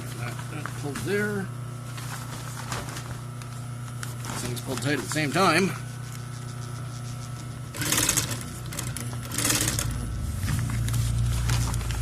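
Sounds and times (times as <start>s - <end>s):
sewing machine stitching: 7.7s - 10.6s.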